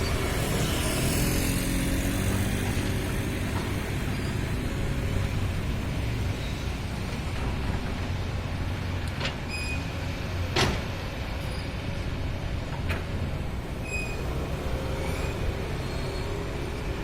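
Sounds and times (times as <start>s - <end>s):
excavator engine rumbling: 0.0s - 17.0s.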